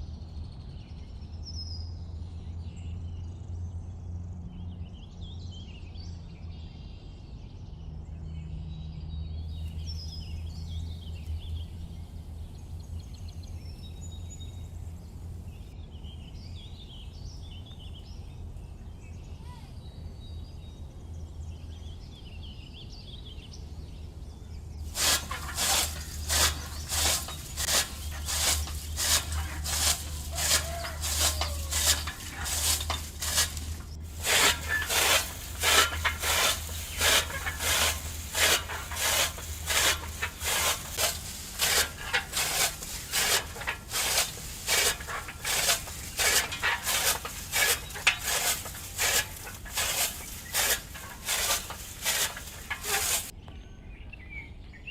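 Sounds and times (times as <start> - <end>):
sickle rasping through grass: 24.8 - 53.3.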